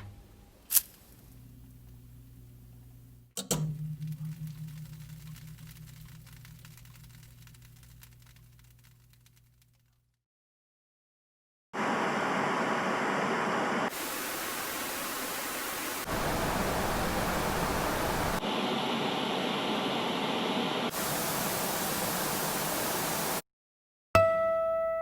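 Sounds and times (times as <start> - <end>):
static hiss: 11.8 - 23.4.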